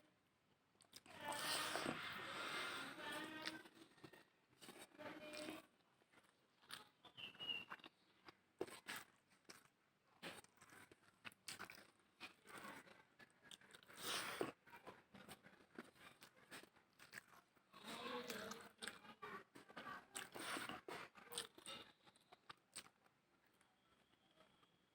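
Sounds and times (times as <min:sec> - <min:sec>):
chewing crunches: 0:03.4 - 0:14.6, 0:15.2 - 0:19.1, 0:20.2 - 0:23.0.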